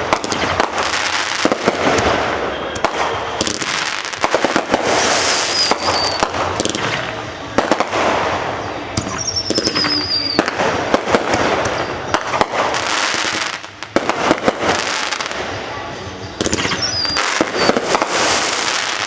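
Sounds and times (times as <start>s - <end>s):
fireworks banging and crackling: 0.0s - 19.0s
falling whistle: 5.3s - 6.4s, 9.1s - 10.5s, 16.2s - 17.9s.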